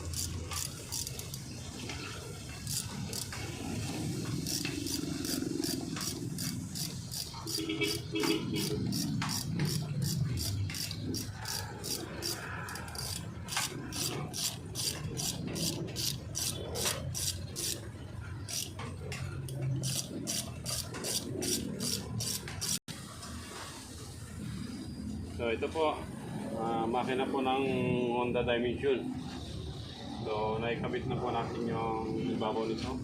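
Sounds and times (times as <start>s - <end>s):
hand tool rasping on engine: 0.0s - 1.5s, 2.5s - 17.8s, 19.8s - 22.8s.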